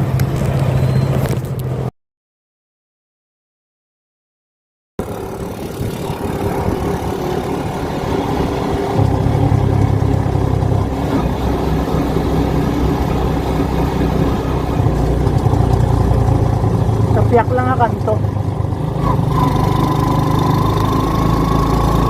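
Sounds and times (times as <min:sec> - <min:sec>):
car engine humming: 0:05.0 - 0:22.0.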